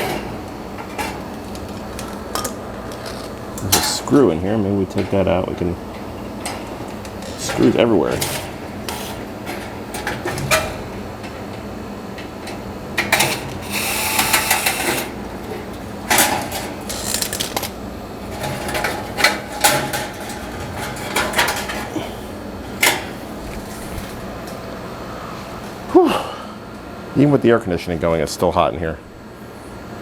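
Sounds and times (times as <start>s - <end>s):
clicks and clatter of parts: 0.9s - 4.0s, 16.1s - 21.9s.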